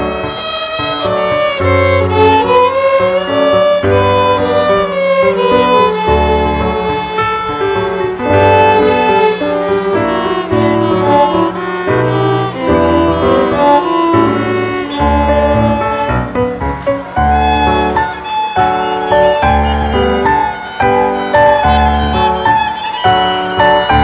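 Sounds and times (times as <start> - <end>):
violin melody: 0.0 - 24.0.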